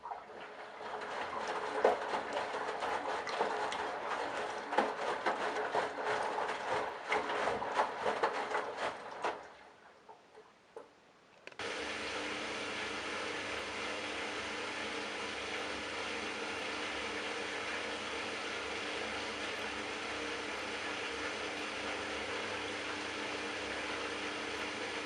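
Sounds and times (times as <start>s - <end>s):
small knocks and clicks: 10.8s - 11.6s.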